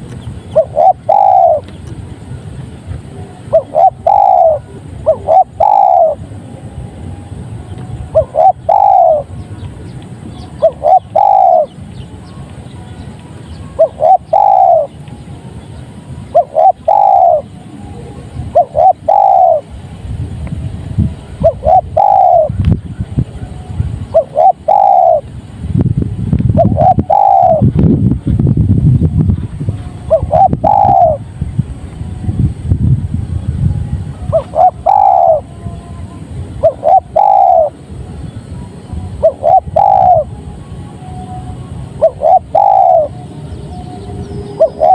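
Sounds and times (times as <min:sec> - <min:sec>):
steady low rumble: 0:00.0 - 0:44.9
dove cooing: 0:00.5 - 0:01.7, 0:03.1 - 0:06.3, 0:08.1 - 0:09.4, 0:10.6 - 0:11.8, 0:13.7 - 0:15.0, 0:16.3 - 0:19.7, 0:21.4 - 0:25.3, 0:26.6 - 0:27.7, 0:30.1 - 0:31.2, 0:34.2 - 0:35.5, 0:36.6 - 0:37.8, 0:39.2 - 0:40.3, 0:42.0 - 0:43.2, 0:44.6 - 0:44.9.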